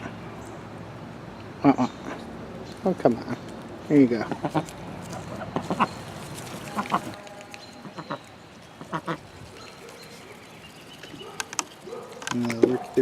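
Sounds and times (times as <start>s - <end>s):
ducks quacking: 4.1s - 10.2s.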